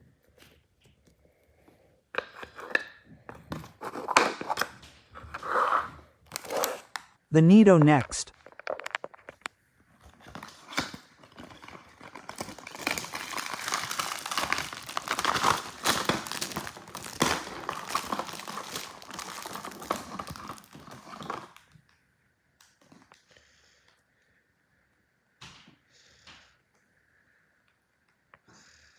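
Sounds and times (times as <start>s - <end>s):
packaging crinkling and tearing: 3.6s - 7.0s, 8.4s - 21.8s.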